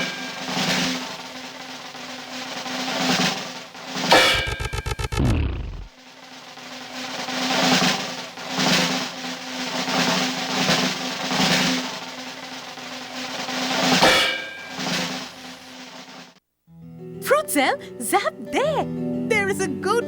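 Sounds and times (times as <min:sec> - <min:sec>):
snare drum rolls: 0:00.0 - 0:16.4
sharp percussive hit: 0:04.1 - 0:05.9, 0:13.9 - 0:15.2.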